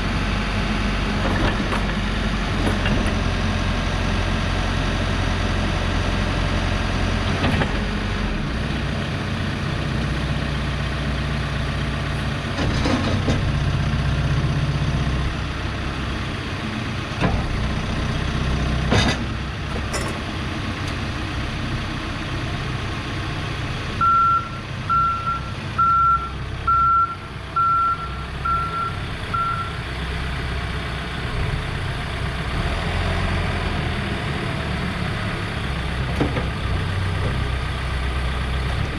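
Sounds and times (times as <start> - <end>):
diesel engine running: 0.0 - 38.9
reverse alarm beeps: 24.0 - 29.7.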